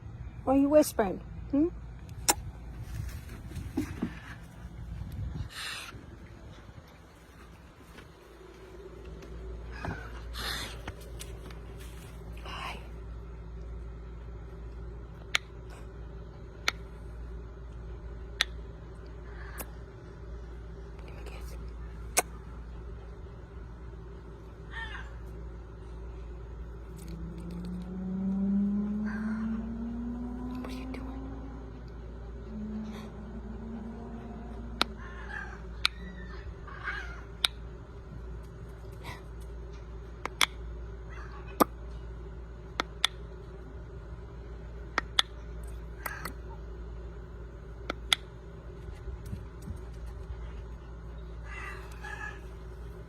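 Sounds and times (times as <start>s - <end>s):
low hum rising in pitch: 0.0s - 53.0s
faint whispery sounds: 11.6s - 13.4s, 19.1s - 23.0s, 30.4s - 34.8s.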